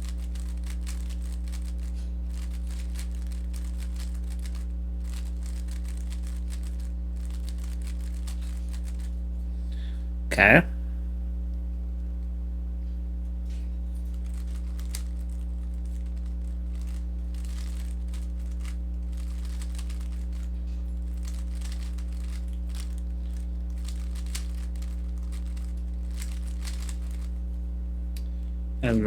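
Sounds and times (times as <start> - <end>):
steady low hum: 0.0 - 29.0
plastic puzzle cube clicking: 16.9 - 20.4, 23.8 - 27.2.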